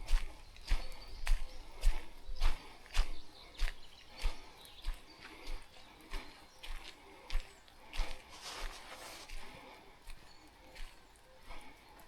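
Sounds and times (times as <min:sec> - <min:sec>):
footsteps walking: 0:00.0 - 0:12.0.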